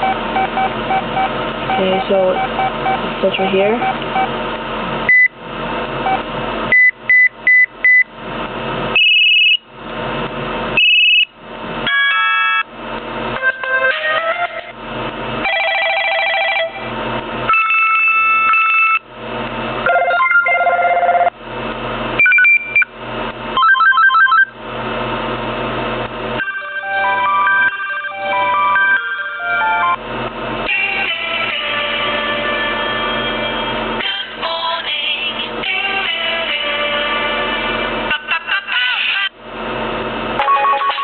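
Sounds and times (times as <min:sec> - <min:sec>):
phone ringtone beeps and melodies: 0:09.0 - 0:09.6, 0:15.5 - 0:16.8, 0:23.6 - 0:24.5, 0:26.4 - 0:30.0, 0:40.4 - 0:41.0.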